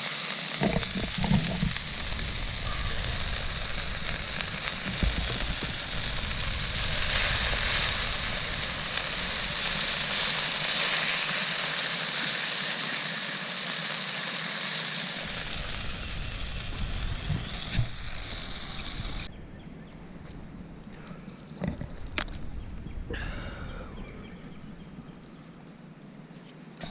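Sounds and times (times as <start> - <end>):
food sizzling in a pan: 0.0 - 19.3.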